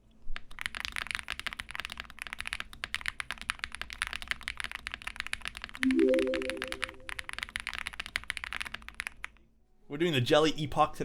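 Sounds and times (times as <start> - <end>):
mechanical keyboard typing: 0.4 - 9.4.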